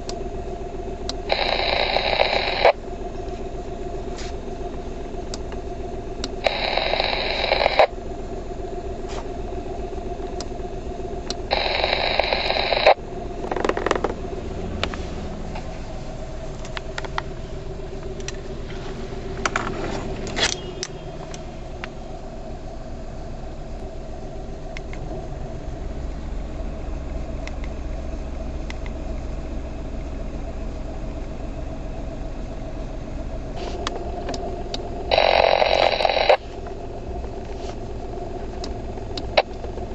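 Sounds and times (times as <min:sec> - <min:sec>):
faint steady tones: 0:00.0 - 0:13.5, 0:14.2 - 0:39.9
radio hiss and hum: 0:01.1 - 0:03.4, 0:05.3 - 0:08.0, 0:08.9 - 0:39.9
static bursts: 0:01.2 - 0:02.8, 0:06.4 - 0:07.9, 0:11.4 - 0:13.0, 0:35.1 - 0:36.4.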